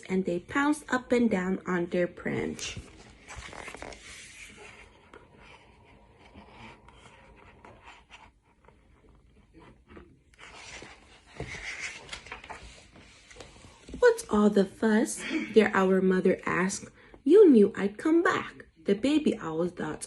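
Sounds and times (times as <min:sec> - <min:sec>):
book rustling: 0:02.2 - 0:14.2.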